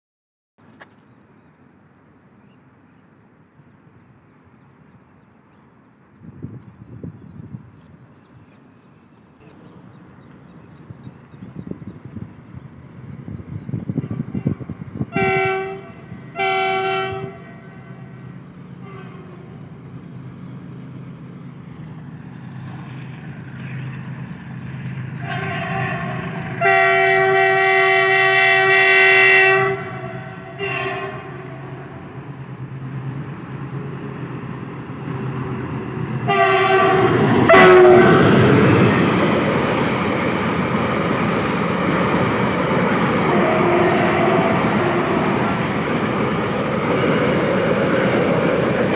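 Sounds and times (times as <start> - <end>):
train rumbling and clattering: 5.9 - 48.9
locomotive air horn blasts: 15.1 - 18.1, 18.8 - 19.6, 25.2 - 31.7, 36.2 - 38.8, 43.2 - 45.7.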